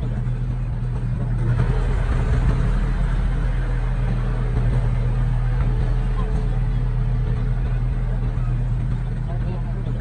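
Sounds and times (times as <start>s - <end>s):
heavy diesel engine running: 0.0s - 10.0s.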